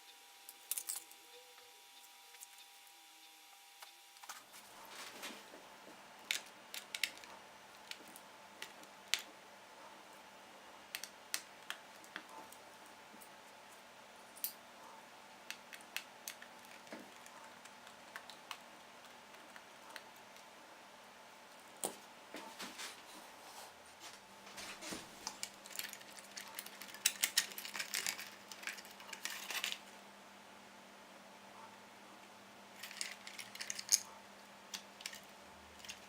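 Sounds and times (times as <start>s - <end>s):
faint steady hum: 0.0s - 36.0s
small laptop parts clicking: 6.2s - 9.3s, 10.9s - 12.3s.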